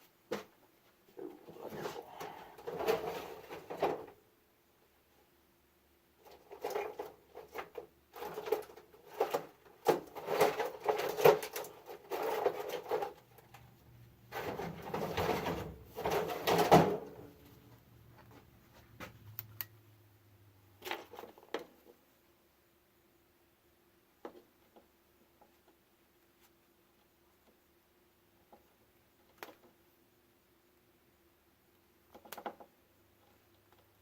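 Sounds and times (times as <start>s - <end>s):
small parts scraping and rustling: 1.0s - 4.2s, 6.2s - 19.4s.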